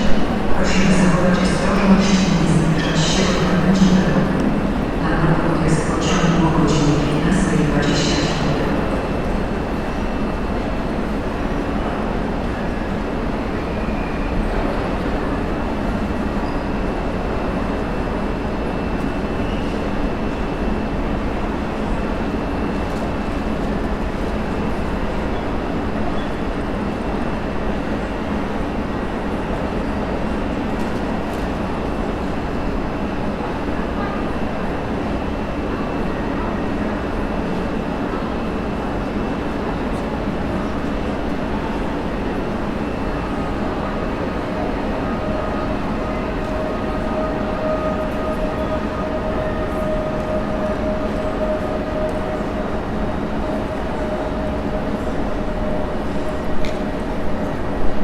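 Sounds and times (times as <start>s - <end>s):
train rumbling on rails: 0.0s - 58.0s
faint high whine: 40.0s - 57.7s.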